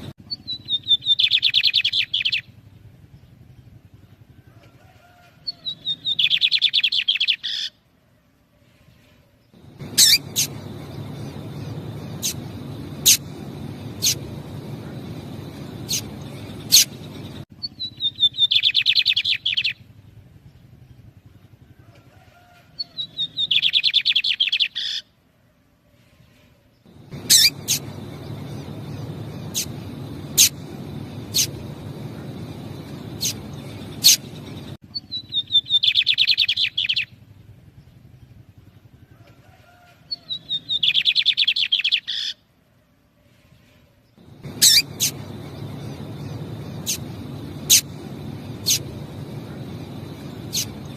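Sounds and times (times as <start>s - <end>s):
bird song with fast trill: 0.0s - 4.2s, 5.4s - 7.8s, 9.5s - 21.4s, 22.8s - 25.1s, 26.8s - 39.0s, 40.1s - 42.4s, 44.1s - 50.9s
bird call notes: 9.6s - 17.4s, 26.9s - 36.7s, 44.2s - 50.9s
low hum: 9.6s - 17.7s, 26.9s - 35.0s, 44.2s - 50.9s.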